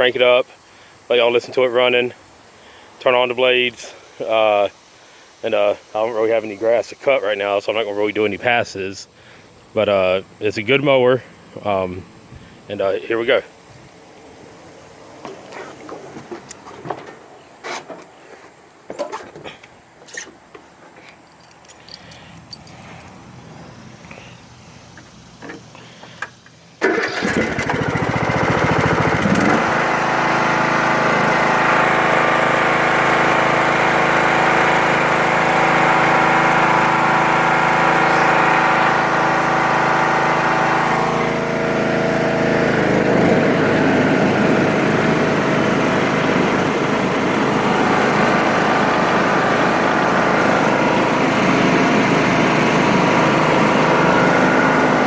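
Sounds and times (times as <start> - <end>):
riding lawn mower engine: 13.6 - 55.0
mower blades running: 25.4 - 55.0.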